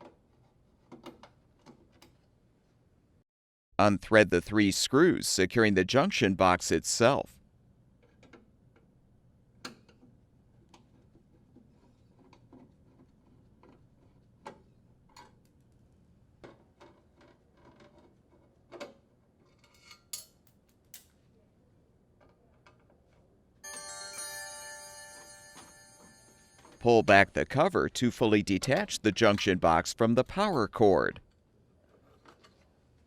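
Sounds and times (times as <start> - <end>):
ringing tone: 23.6 - 26.9.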